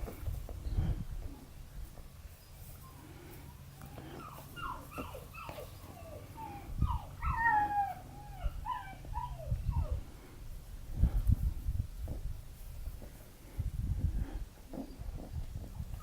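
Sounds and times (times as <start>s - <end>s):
puppy whining and yipping: 2.7s - 10.0s.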